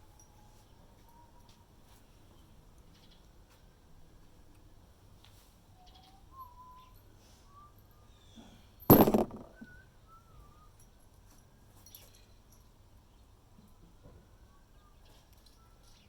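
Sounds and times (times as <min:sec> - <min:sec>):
loud clatter of hard object: 0:08.9 - 0:09.6.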